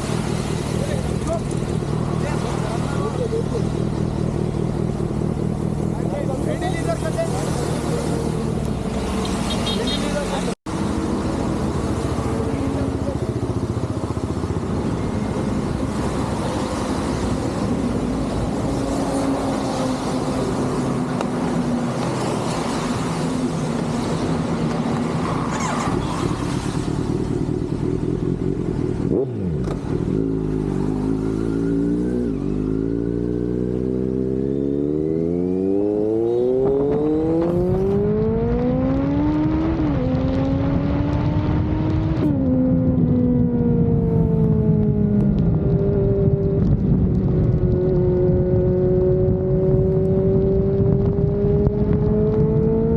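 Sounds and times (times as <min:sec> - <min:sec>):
motorcycle engine revving: 0:00.0 - 0:52.9
wind rushing noise: 0:32.3 - 0:52.9.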